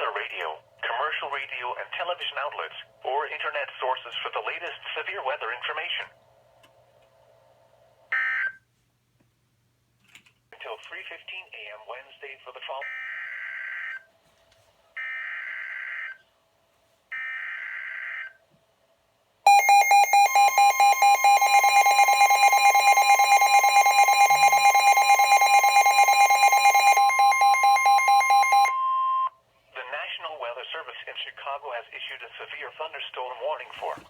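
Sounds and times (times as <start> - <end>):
rapid alarm beeps: 19.5 - 29.3
steady warning alarm tone: 19.5 - 29.3.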